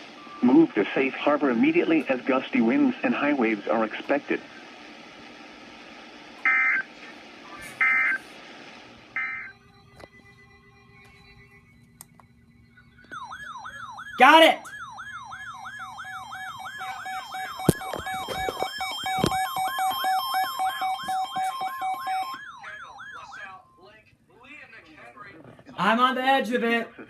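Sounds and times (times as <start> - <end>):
warbling siren-like alarm tone: 9.1 - 23.8
clicks: 11.8 - 12.4.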